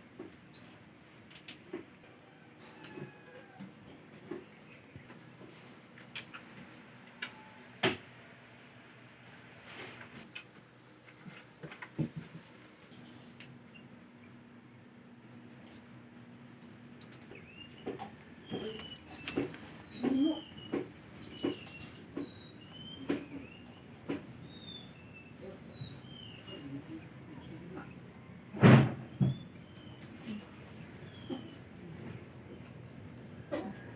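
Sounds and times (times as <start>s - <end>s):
birds chirping: 4.4s - 6.8s, 12.4s - 13.9s, 17.1s - 33.9s.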